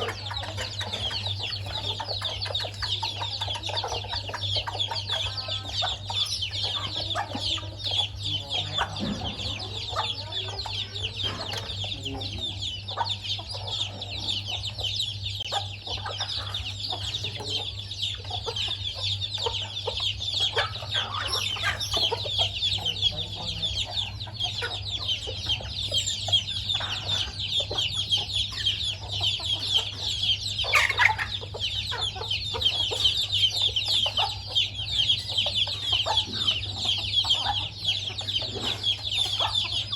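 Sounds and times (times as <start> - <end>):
chicks peeping: 0.0 - 39.9
hen clucking: 0.0 - 39.9.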